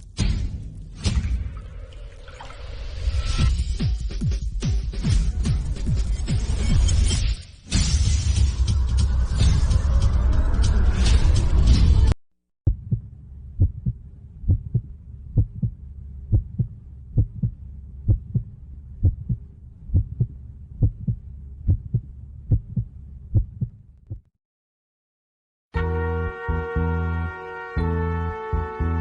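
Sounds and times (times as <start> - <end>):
heartbeat thumps: 12.7 - 24.3.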